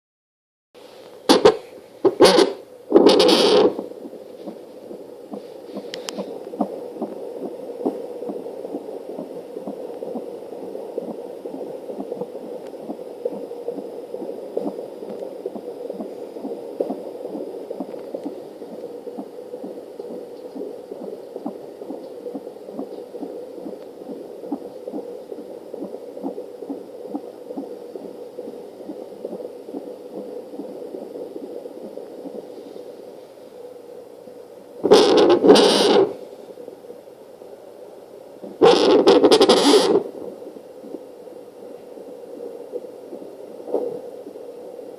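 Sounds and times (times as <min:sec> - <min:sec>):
fetal heartbeat whooshing pulse: 0:02.9 - 0:32.6.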